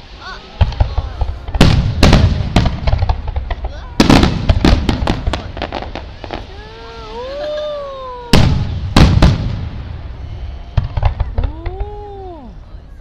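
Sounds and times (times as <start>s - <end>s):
fireworks crackling pops: 0.0s - 7.6s, 8.2s - 12.5s
firework shells booming: 0.6s - 6.5s, 8.3s - 12.0s.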